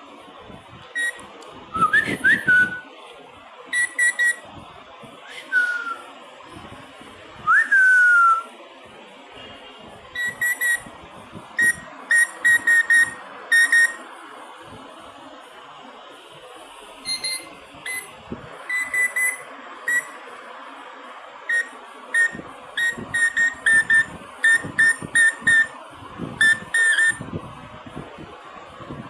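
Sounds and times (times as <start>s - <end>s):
bird imitating beeps: 17.1s - 18.1s, 21.5s - 25.7s, 26.4s - 27.2s.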